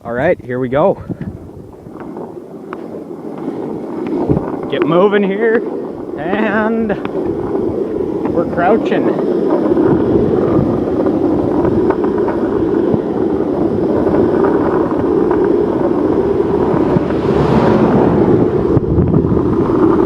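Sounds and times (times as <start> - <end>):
skateboard wheels rolling on asphalt: 0.0 - 20.0
wind rushing over microphone: 0.0 - 20.0.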